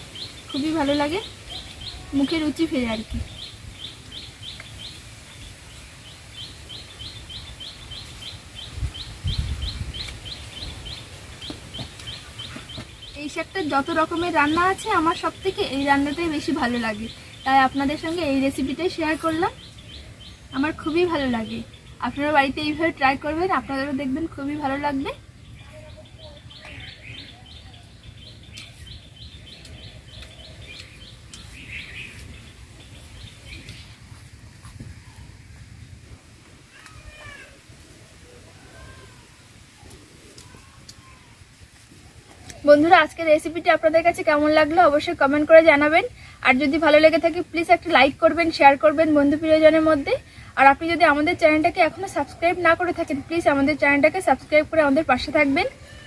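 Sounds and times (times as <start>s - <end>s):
small bird chirping: 25.3s - 35.4s.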